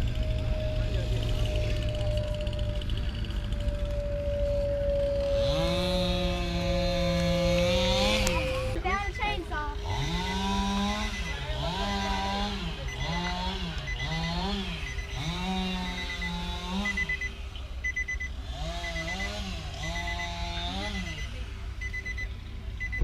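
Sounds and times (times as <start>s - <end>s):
chainsaw cutting: 0.0s - 21.9s
high electronic beeping: 8.3s - 11.6s, 12.9s - 23.0s.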